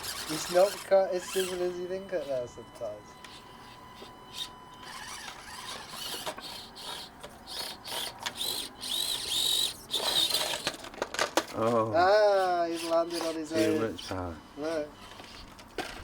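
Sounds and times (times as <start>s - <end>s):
small electric motor whining: 0.0s - 10.9s, 11.6s - 16.0s
toy truck clicks and knocks: 4.9s - 11.5s.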